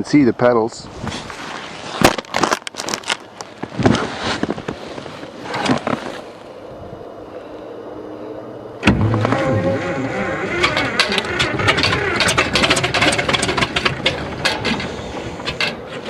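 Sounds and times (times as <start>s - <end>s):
bulldozer engine starting and running: 8.8s - 16.0s
knocks and clunks on controls: 8.8s - 16.0s.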